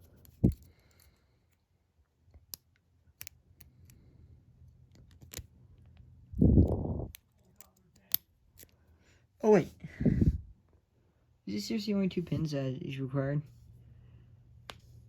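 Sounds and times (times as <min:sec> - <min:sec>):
lock pick clicking in padlock: 0:02.3 - 0:04.0, 0:04.9 - 0:05.5, 0:07.1 - 0:08.8.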